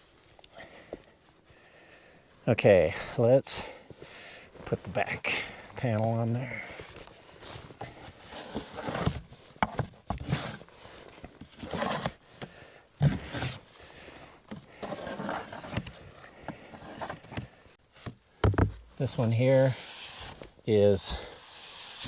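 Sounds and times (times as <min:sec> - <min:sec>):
wood scraping on wood: 0:07.0 - 0:12.2, 0:13.0 - 0:13.7, 0:14.5 - 0:22.0
sharp wooden knocks: 0:18.4 - 0:18.9.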